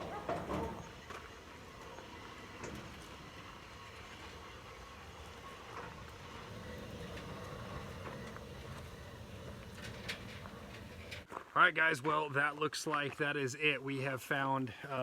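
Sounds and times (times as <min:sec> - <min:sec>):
wheels rumbling on steel track: 0:00.0 - 0:11.3.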